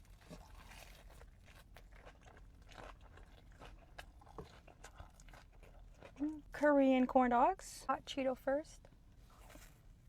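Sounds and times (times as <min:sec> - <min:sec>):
crunchy chewing: 0:00.0 - 0:06.5.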